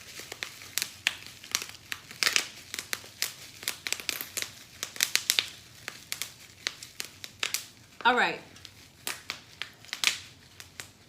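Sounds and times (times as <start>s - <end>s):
packaging crackling and rustling: 0.0s - 11.0s.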